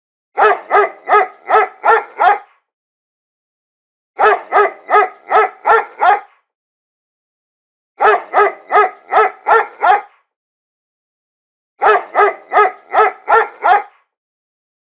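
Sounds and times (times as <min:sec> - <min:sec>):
dog barking: 0:00.4 - 0:02.7, 0:04.2 - 0:06.5, 0:08.0 - 0:10.3, 0:11.8 - 0:14.1.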